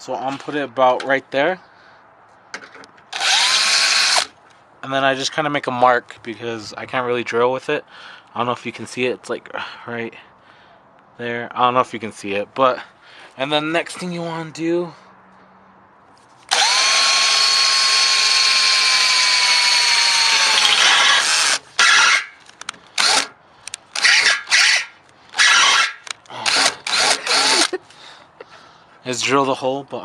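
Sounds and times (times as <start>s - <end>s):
electric drill whining: 3.1s - 4.3s, 16.5s - 22.4s, 23.0s - 27.8s.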